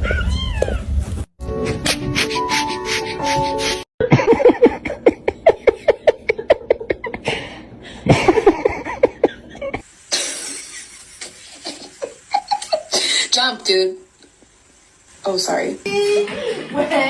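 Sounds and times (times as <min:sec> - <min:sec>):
steady hiss: 0:08.4 - 0:17.0.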